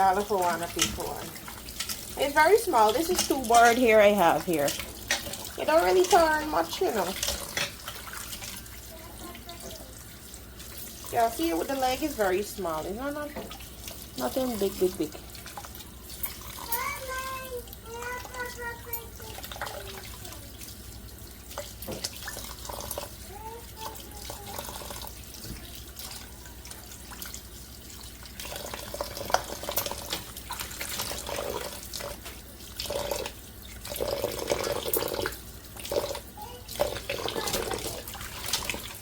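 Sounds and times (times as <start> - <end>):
water splashing: 0.0 - 39.0
tap running into a sink: 9.2 - 9.9, 13.2 - 14.0, 21.5 - 26.2.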